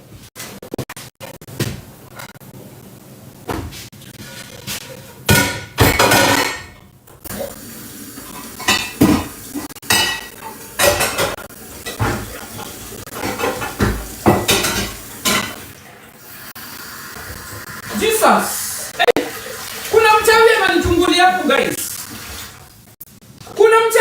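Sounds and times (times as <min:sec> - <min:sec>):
kitchenware clattering and clinking: 0:05.2 - 0:07.6, 0:08.2 - 0:15.8.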